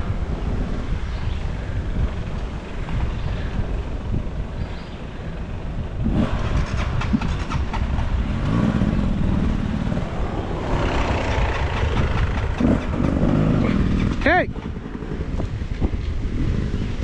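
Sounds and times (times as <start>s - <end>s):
dirt bike engine running: 0.0s - 17.0s.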